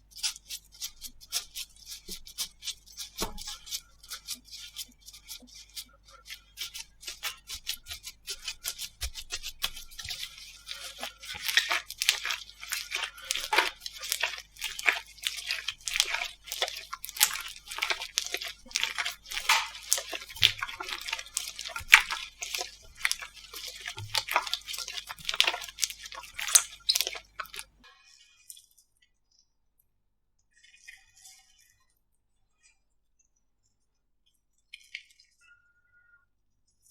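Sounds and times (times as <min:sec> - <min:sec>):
slime squeezed by hand: 0:07.1 - 0:27.7.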